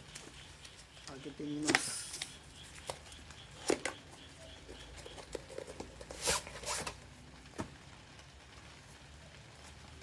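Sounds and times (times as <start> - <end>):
zipper being pulled open: 6.2 - 6.9.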